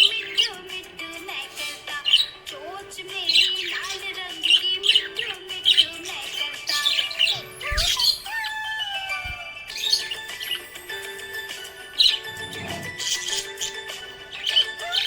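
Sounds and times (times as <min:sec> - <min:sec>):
budgerigar chirping: 0:00.0 - 0:00.6, 0:01.5 - 0:02.5, 0:03.2 - 0:08.6, 0:09.7 - 0:11.0, 0:11.9 - 0:15.0
background music with held notes: 0:00.0 - 0:15.0.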